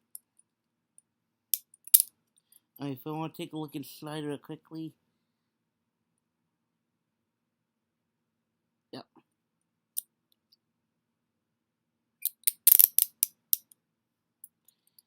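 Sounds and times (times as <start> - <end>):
handcuffs clicking and rattling: 1.6 - 2.1, 12.2 - 13.7.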